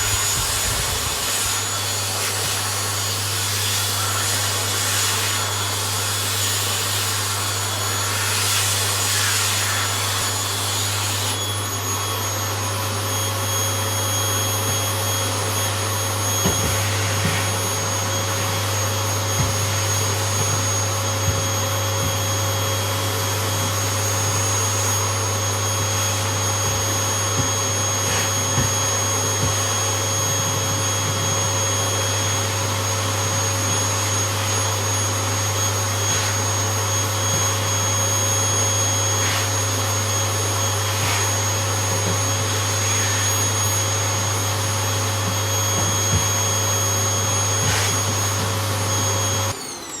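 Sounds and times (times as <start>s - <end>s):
vacuum cleaner running: 0.0s - 50.0s.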